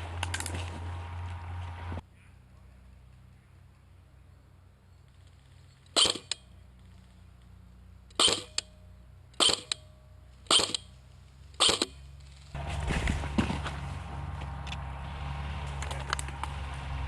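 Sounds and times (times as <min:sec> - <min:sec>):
airsoft rifle shots: 0:05.9 - 0:06.4, 0:08.1 - 0:08.7, 0:09.4 - 0:09.9, 0:10.5 - 0:10.9, 0:11.6 - 0:12.0.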